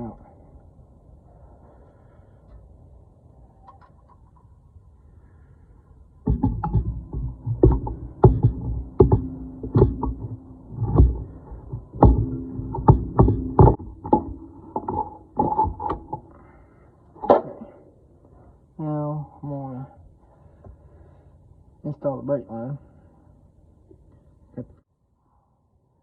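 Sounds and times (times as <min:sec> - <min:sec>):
metal knocks and clunks: 0:06.2 - 0:16.4.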